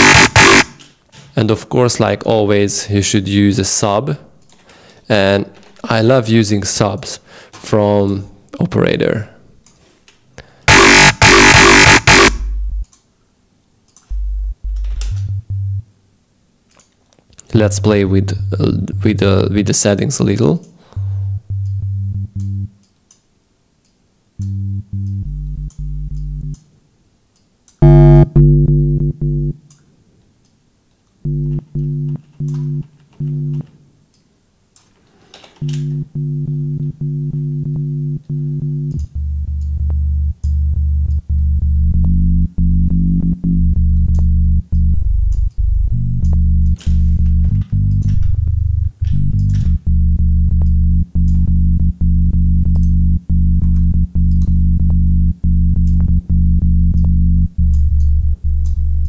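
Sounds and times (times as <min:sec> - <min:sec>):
growling synth bass: 0:10.7 - 0:12.9, 0:14.1 - 0:15.8, 0:31.3 - 0:33.6, 0:35.7 - 0:46.8, 0:47.4 - 0:59.0.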